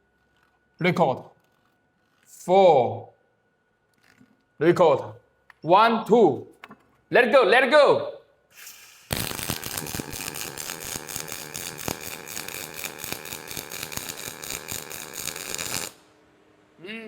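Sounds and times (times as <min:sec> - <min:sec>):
welding arc crackling: 0:08.6 - 0:16.0.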